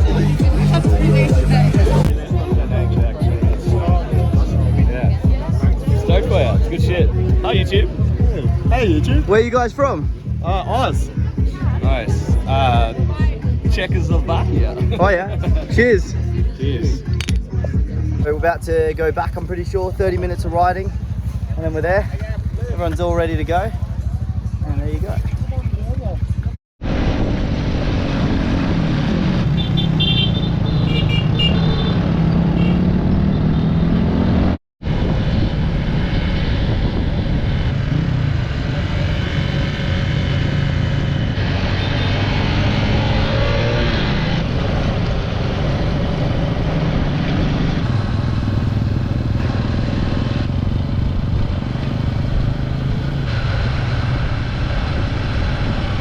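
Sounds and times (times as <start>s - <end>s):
road and wind noise: 0.0s - 56.0s
dirt bike engine revving: 27.1s - 56.0s.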